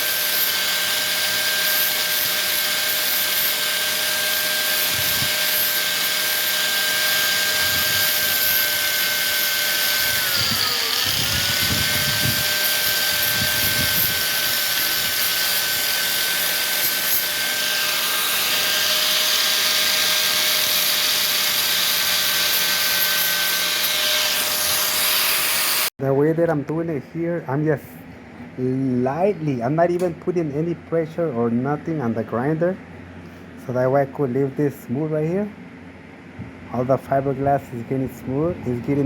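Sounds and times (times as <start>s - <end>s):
angle grinder sanding fiberglass: 0.0s - 25.9s.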